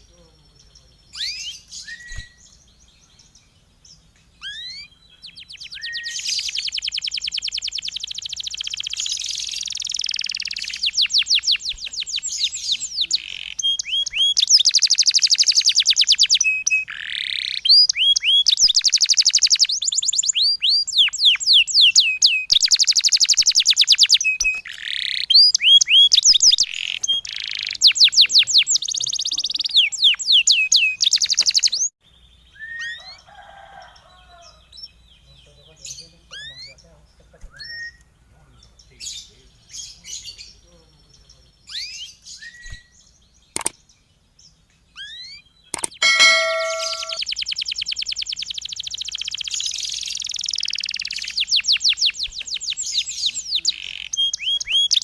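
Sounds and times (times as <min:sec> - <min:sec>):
small songbird trilling: 0:04.4 - 0:31.9, 0:45.0 - 0:55.0.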